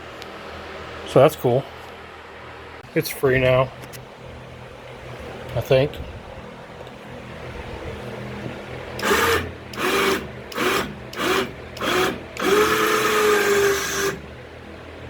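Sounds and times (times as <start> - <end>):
impact wrench bursts: 9.0 - 14.3.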